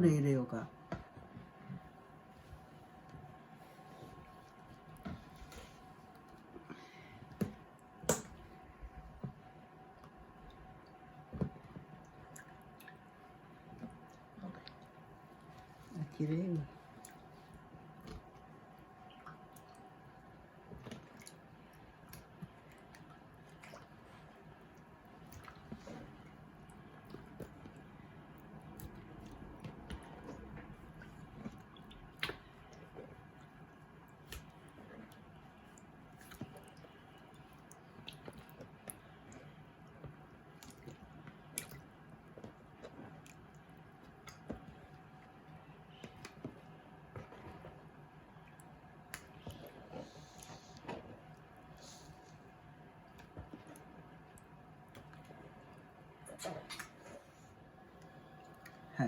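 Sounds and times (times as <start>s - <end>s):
low steady hum: 0.0s - 59.0s
soft squishes of jelly: 0.7s - 59.0s
soft wet clicks: 0.8s - 58.9s
water drips: 4.2s - 49.8s.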